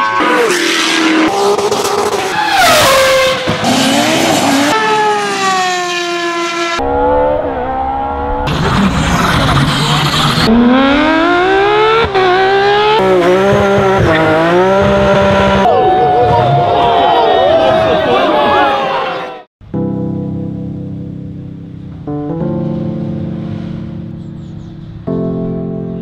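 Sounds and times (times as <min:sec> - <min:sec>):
rally car engines revving: 0:00.0 - 0:15.7.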